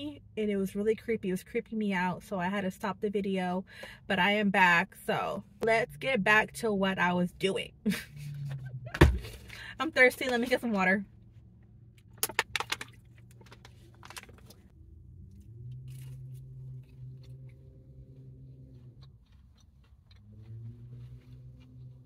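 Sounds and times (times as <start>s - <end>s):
plastic bottle crackling: 12.0s - 14.7s.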